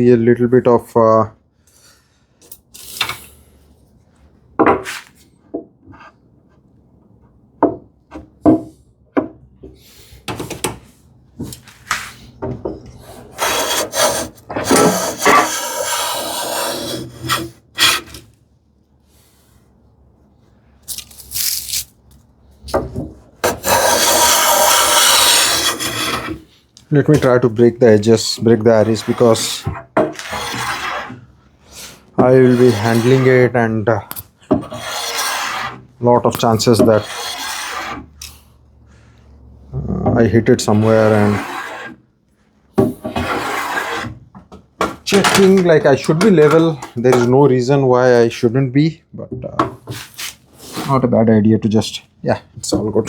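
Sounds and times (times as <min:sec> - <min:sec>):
hand tool rasping along wood: 0:13.1 - 0:18.2, 0:23.4 - 0:26.4, 0:28.1 - 0:31.2, 0:32.2 - 0:33.5, 0:34.6 - 0:35.8, 0:36.4 - 0:38.0, 0:40.7 - 0:42.0, 0:43.2 - 0:44.1.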